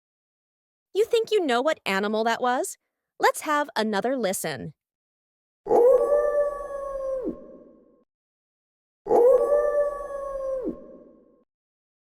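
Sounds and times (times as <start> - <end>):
wolf howling: 5.7 - 7.5, 9.1 - 11.1.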